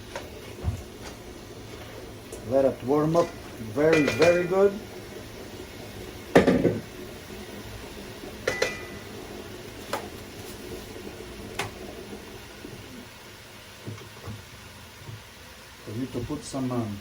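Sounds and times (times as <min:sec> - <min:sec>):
utensil clanking on metal pot: 0:03.0 - 0:04.8, 0:08.4 - 0:08.9.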